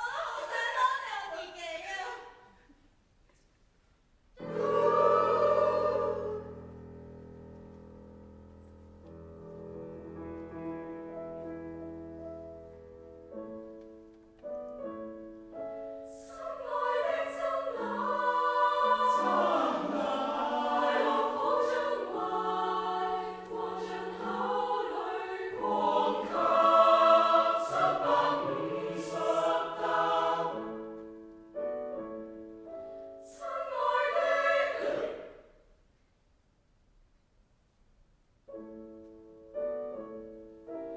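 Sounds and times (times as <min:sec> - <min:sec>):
choir singing: 0:00.0 - 0:01.4, 0:04.4 - 0:06.8, 0:16.0 - 0:31.2, 0:33.1 - 0:35.6.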